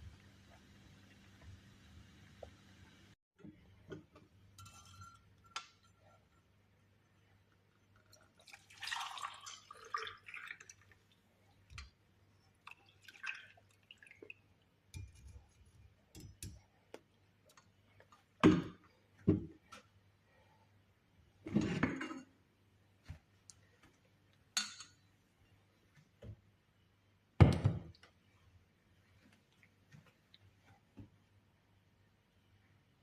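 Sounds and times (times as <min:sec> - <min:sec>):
liquid pouring and dripping: 0:05.5 - 0:16.6.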